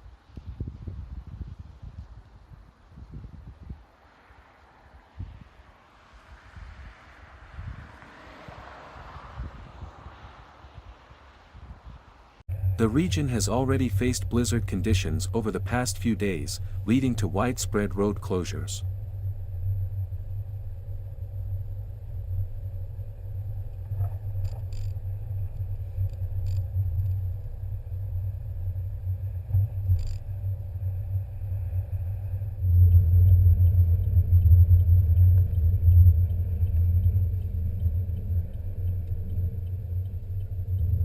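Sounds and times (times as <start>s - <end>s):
low steady rumble: 0.0s - 41.0s
faint clicks: 32.7s - 41.0s.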